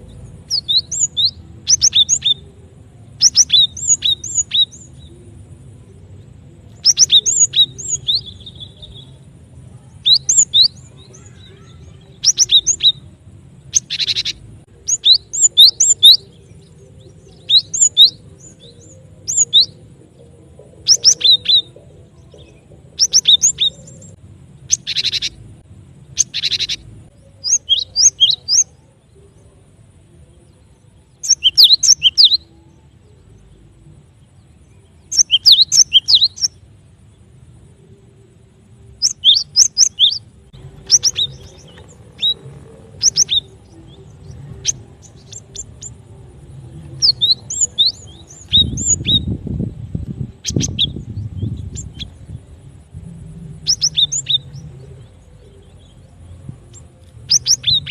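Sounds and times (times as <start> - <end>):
high whistled bird notes: 3.2 - 5.1, 6.8 - 9.2, 10.0 - 13.0, 31.2 - 32.5, 35.1 - 36.6, 39.0 - 46.1
harsh buzzy bird calls: 6.8 - 19.9, 23.0 - 28.8, 38.9 - 46.1, 50.2 - 57.9.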